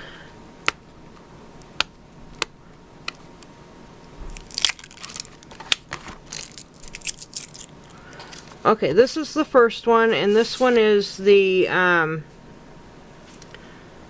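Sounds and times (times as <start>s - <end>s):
packaging crackling and rustling: 4.1s - 8.7s.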